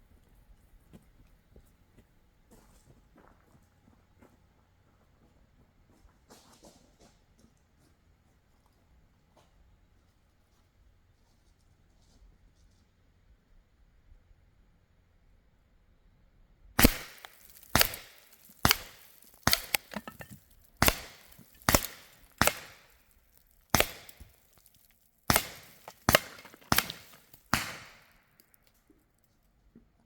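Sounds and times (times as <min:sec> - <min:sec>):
air gun shots: 0:16.8 - 0:23.0, 0:23.7 - 0:24.4, 0:25.3 - 0:28.1.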